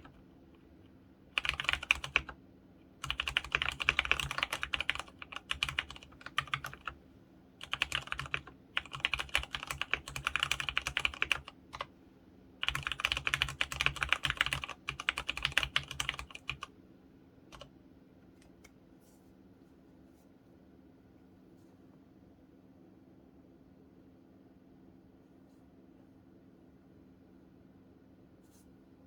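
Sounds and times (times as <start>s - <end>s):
mechanical keyboard typing: 0.0s - 0.2s, 1.4s - 2.4s, 3.0s - 7.0s, 7.6s - 11.9s, 12.6s - 16.7s.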